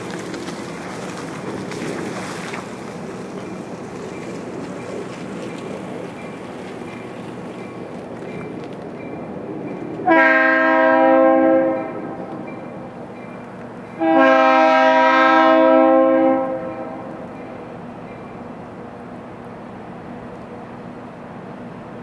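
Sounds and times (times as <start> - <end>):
train noise: 0.0 - 22.0
locomotive air horn chord: 10.0 - 12.3, 14.0 - 17.2.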